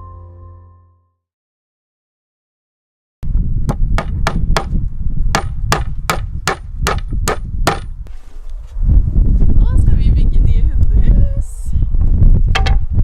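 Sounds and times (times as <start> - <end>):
wind rumble on microphone: 3.2 - 13.0
sharp metallic knocks: 3.7 - 8.0, 12.5 - 12.9.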